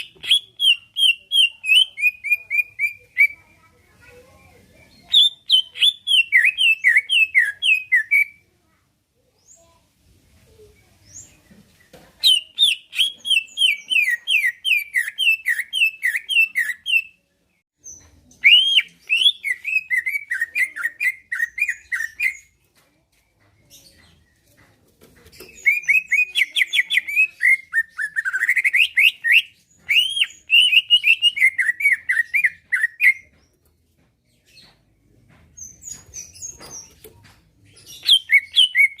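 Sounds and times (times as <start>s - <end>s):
bird singing rapid chattering: 0.0s - 3.5s, 4.8s - 8.4s, 11.0s - 22.6s, 25.2s - 39.0s.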